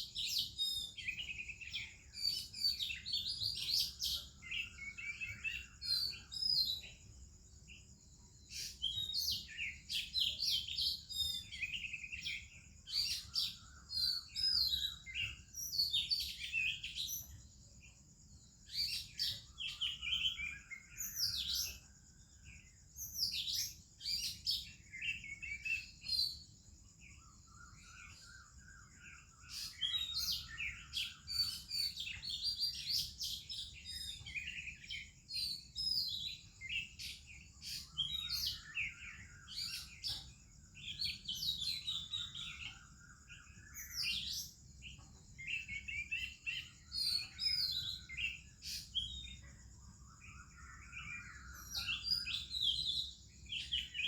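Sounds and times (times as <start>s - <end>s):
bird singing whistled phrases: 50.3s - 54.0s.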